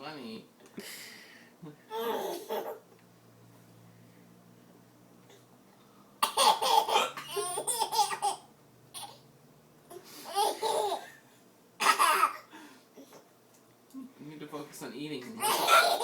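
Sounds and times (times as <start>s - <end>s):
baby laughing hard: 1.9s - 2.8s, 6.2s - 9.2s, 10.3s - 11.1s, 11.8s - 12.5s, 15.4s - 16.0s.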